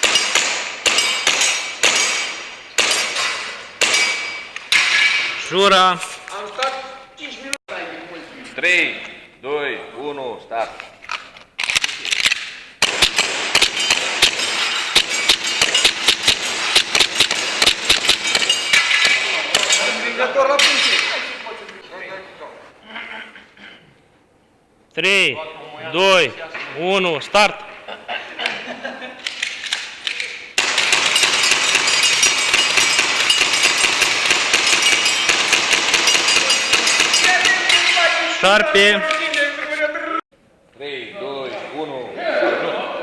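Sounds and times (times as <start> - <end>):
pellets pinging on metal targets: 0.0 - 5.4, 12.8 - 21.3, 30.6 - 38.4
airsoft pistol shots: 12.8 - 19.2, 30.6 - 37.8.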